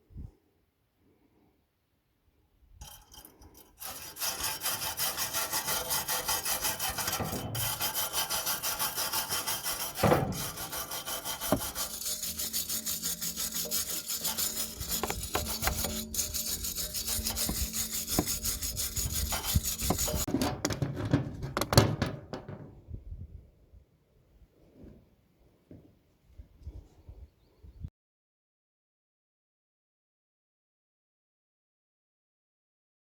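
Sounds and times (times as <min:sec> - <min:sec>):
hand scraping exhaust pipe: 0:02.8 - 0:22.7.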